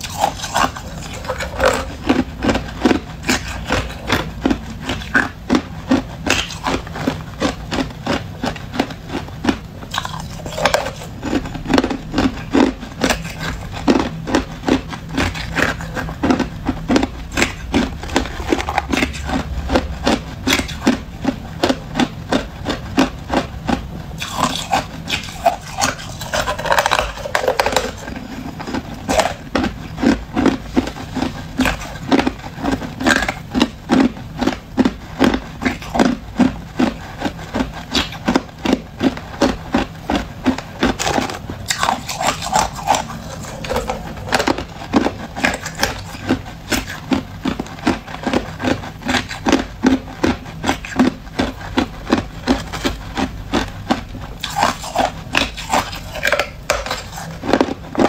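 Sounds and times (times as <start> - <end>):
ice being chewed: 0.0 - 58.0.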